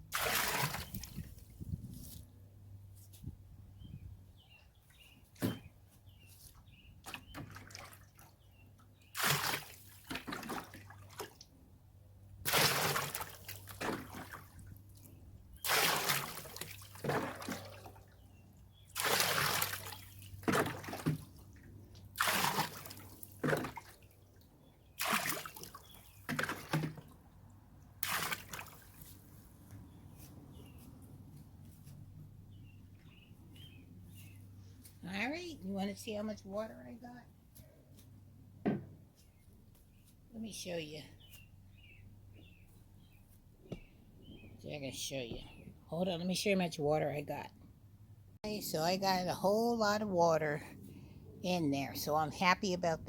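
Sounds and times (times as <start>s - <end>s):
water pouring into a trash can: 0.1s - 1.2s, 12.5s - 14.4s, 15.6s - 17.8s, 18.9s - 21.3s, 22.2s - 23.9s, 28.0s - 28.9s
water dribbling: 12.5s - 18.2s, 18.8s - 29.1s.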